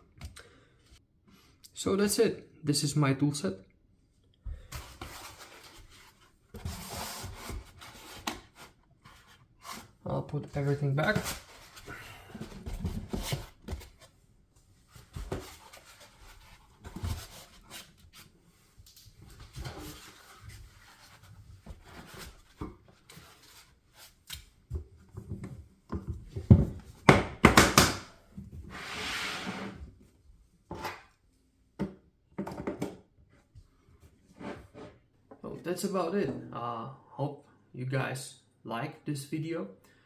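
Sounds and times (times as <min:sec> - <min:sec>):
rustling scrape: 0:28.7 - 0:29.8.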